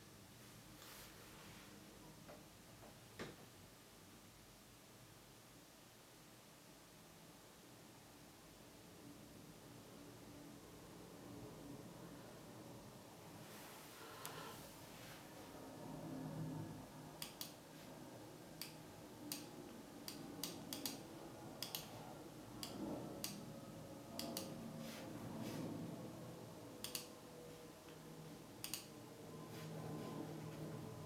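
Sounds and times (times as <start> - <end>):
faint low hum: 0.0 - 31.0
sharp clicks: 18.6 - 21.0, 21.6 - 21.9, 26.8 - 27.1, 28.6 - 28.9.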